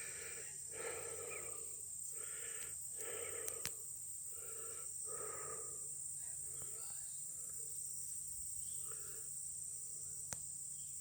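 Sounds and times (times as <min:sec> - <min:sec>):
man breathing hard: 0:00.0 - 0:06.8.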